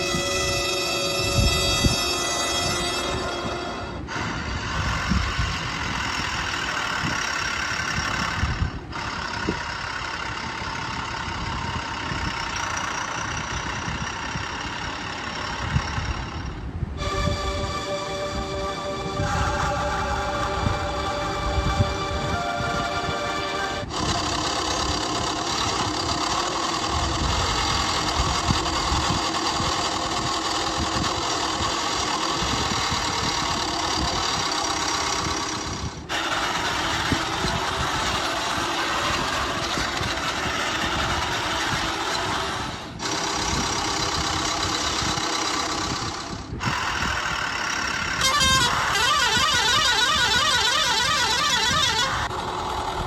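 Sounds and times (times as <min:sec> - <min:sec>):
vehicle engine running: 0:00.0 - 0:53.0
rapidly warbling tone: 0:17.0 - 0:30.6.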